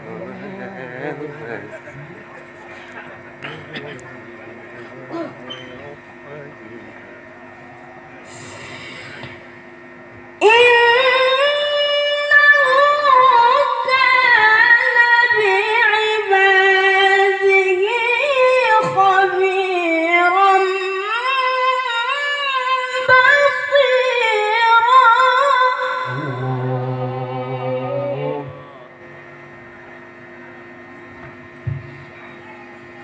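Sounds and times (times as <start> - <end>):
melodic sung recitation: 24.1 - 29.0.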